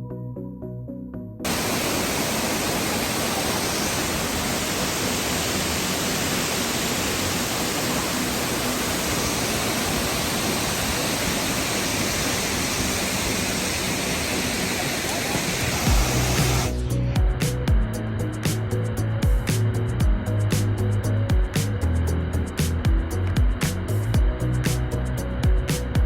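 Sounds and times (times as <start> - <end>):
waterfall rushing: 1.5 - 16.8.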